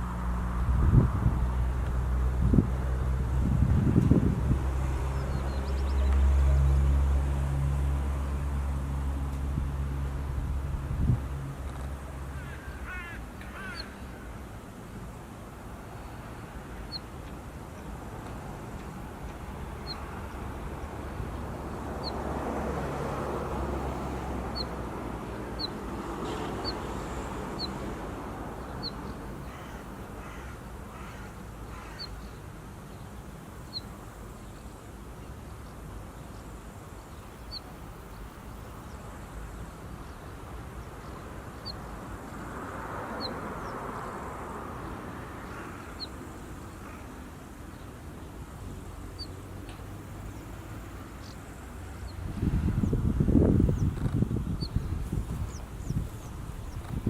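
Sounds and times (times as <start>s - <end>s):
crow cawing: 12.4s - 14.2s, 29.4s - 32.1s, 45.4s - 46.1s.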